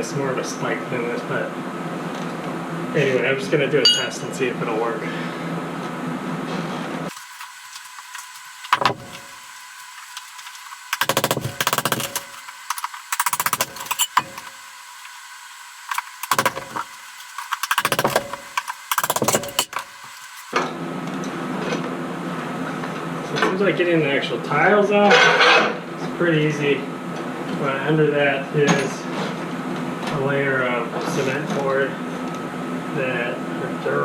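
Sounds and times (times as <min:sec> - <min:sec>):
hammer striking chisel: 0:11.0 - 0:14.5, 0:16.2 - 0:16.9, 0:17.5 - 0:19.9.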